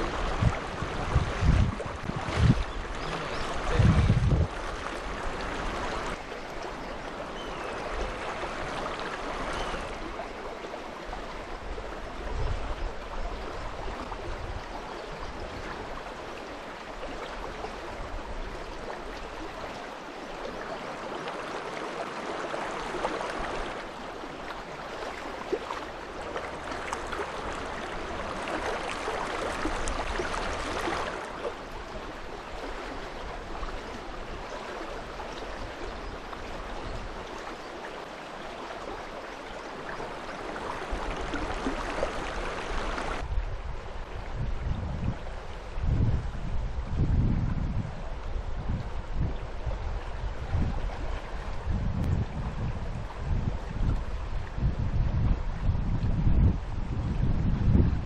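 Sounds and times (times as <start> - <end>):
river water rushing: 0.0 - 44.2.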